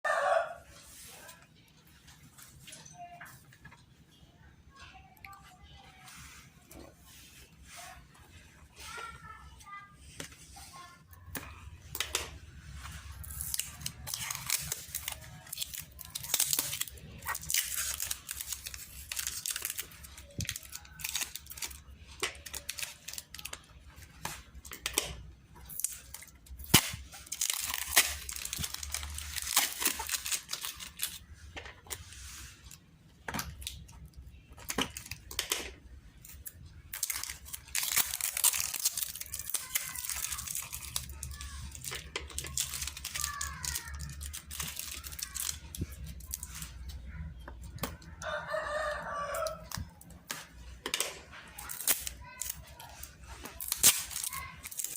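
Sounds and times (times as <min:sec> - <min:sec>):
plastic packaging tearing and crinkling: 0:11.9 - 0:32.8, 0:33.4 - 0:47.0, 0:47.8 - 0:54.9.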